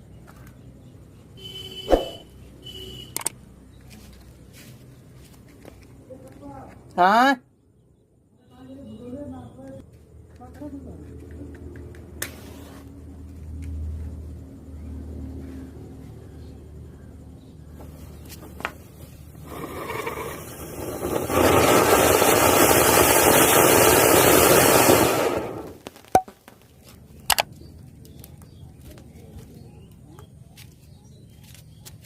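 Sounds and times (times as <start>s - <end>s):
firework fountain hissing: 19.2s - 25.9s.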